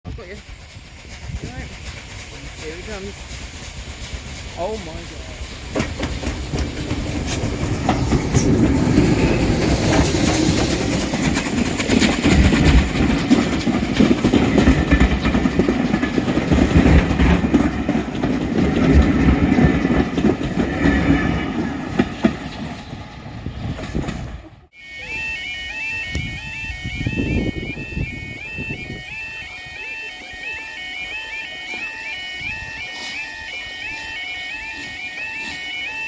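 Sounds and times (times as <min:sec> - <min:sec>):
steam train passing: 0:00.1 - 0:36.0
wheels clattering over rails: 0:00.2 - 0:23.2.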